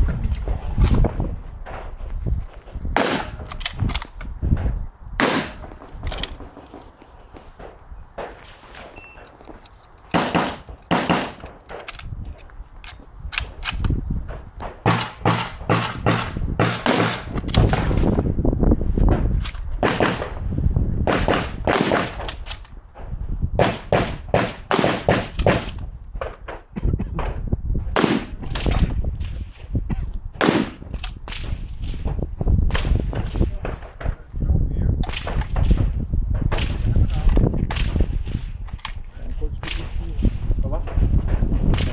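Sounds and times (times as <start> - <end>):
rifle shots: 3.0 - 4.2, 5.2 - 6.9, 10.1 - 12.1, 14.6 - 18.3, 19.8 - 20.4, 21.0 - 22.6, 23.6 - 26.6, 28.0 - 29.6, 30.4 - 32.0
rifle bolt worked by hand: 3.1 - 4.3, 8.9 - 13.9.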